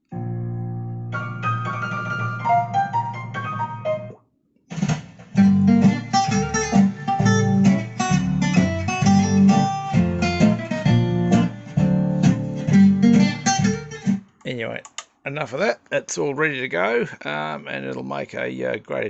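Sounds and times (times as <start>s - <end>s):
piano music: 0.1s - 4.2s, 5.4s - 14.1s
strummed acoustic guitar music: 5.3s - 14.3s.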